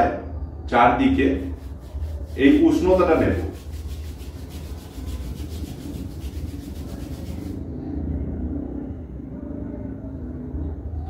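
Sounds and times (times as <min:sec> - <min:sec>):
palms rubbing together: 0:01.2 - 0:07.6.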